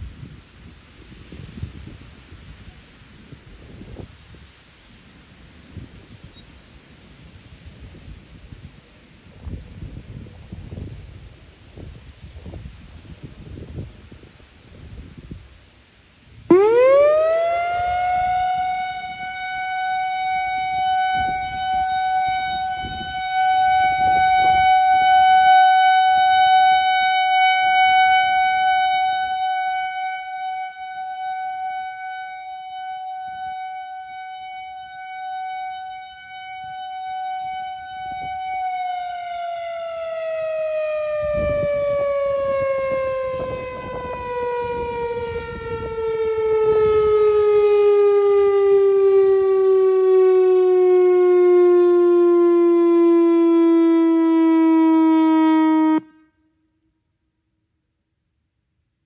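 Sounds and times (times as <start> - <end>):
warning siren alert tone: 16.5 - 56.2.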